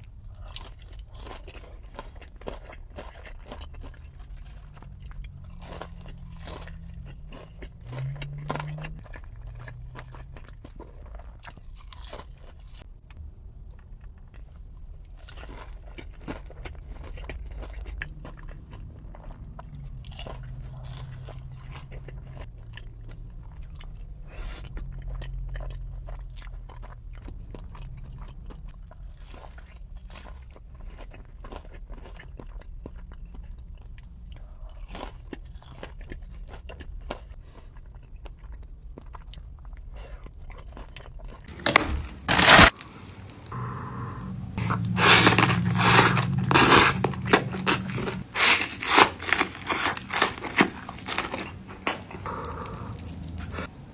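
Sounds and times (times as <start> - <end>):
crunchy bites: 0.0 - 12.9, 38.1 - 53.7
person chewing food: 0.0 - 43.9, 44.5 - 53.9.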